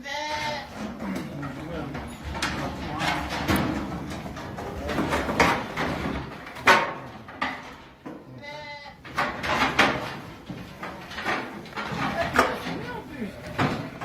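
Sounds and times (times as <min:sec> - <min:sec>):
sheep bleating: 0:00.0 - 0:00.8, 0:08.4 - 0:09.0
thumping and rattling: 0:00.7 - 0:08.3, 0:09.0 - 0:14.0.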